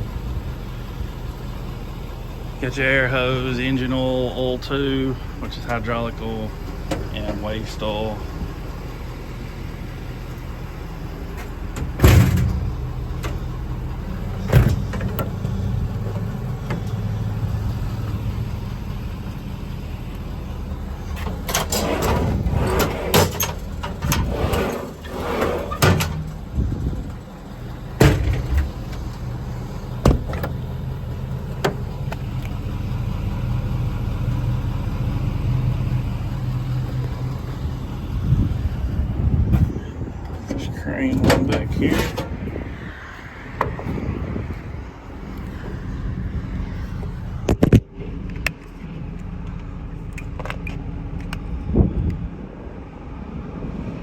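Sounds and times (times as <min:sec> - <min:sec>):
diesel engine idling: 0:00.0 - 0:54.0
clanking and rattling: 0:11.1 - 0:18.6, 0:20.9 - 0:32.5, 0:39.6 - 0:42.6.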